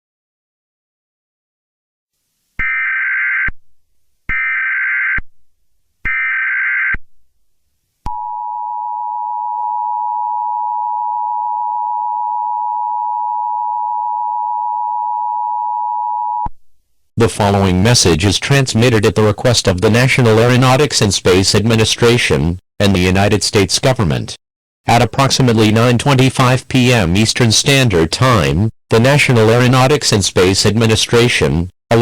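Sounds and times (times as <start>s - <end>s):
two-tone alarm: 8.1s - 16.5s.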